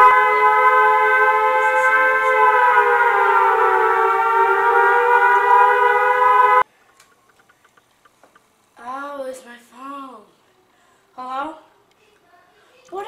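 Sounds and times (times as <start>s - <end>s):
warning siren wailing: 0.0s - 6.6s.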